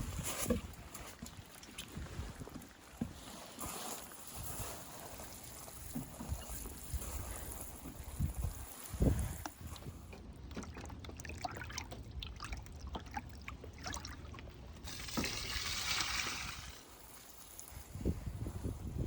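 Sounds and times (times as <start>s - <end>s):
water trickling and dripping: 0.5s - 18.1s
water pouring hiss: 14.8s - 18.0s.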